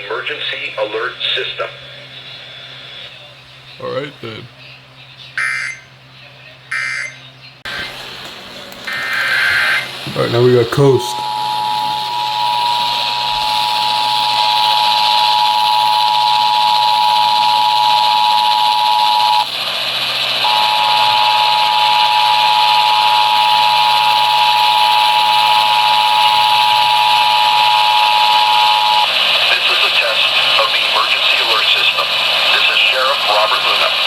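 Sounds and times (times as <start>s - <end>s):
radio static hiss: 0.0s - 34.0s
two-tone alert signal: 9.4s - 19.4s, 20.4s - 29.1s.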